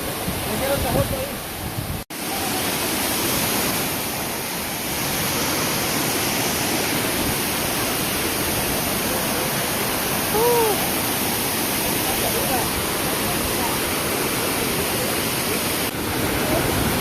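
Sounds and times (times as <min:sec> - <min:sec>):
waterfall rushing: 0:00.0 - 0:17.0
person calling out: 0:10.3 - 0:10.9.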